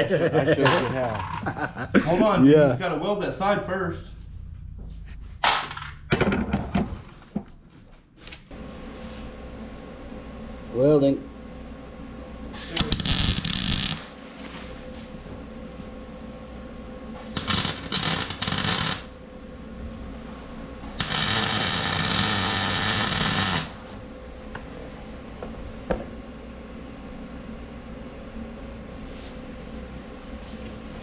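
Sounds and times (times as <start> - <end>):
welding arc crackling: 12.6 - 14.2, 17.2 - 19.2, 20.8 - 23.9.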